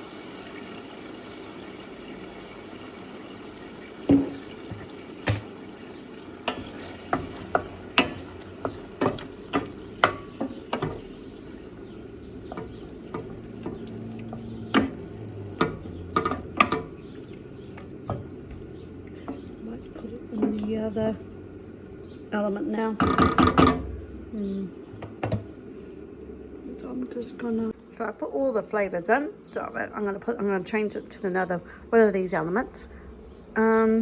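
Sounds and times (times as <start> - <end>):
utensils clinking against dishes: 11.8 - 19.6.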